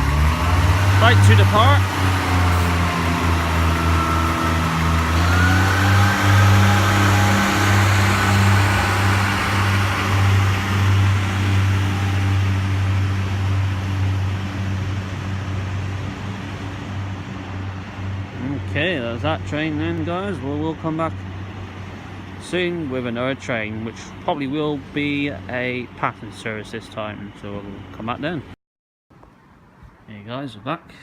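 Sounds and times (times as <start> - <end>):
rising tone: 0.0 - 14.7
diesel train engines humming: 0.0 - 28.5.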